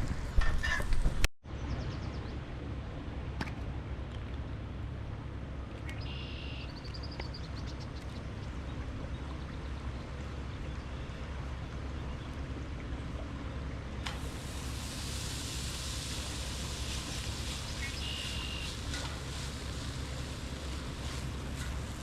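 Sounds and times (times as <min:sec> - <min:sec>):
low river rumble: 0:00.0 - 0:22.0
high bird chirps: 0:05.9 - 0:07.9, 0:17.7 - 0:18.8
steady high hiss: 0:14.1 - 0:22.0.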